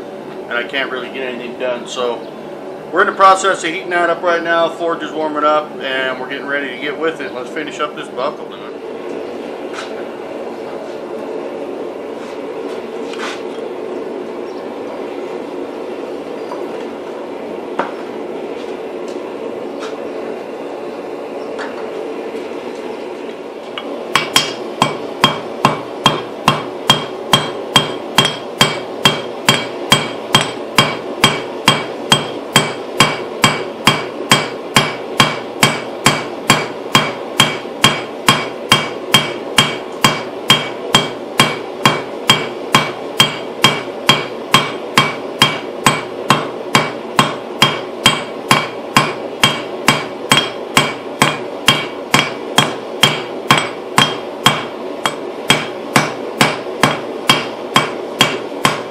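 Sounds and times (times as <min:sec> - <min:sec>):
hammer striking steel on anvil: 0:24.2 - 0:58.9.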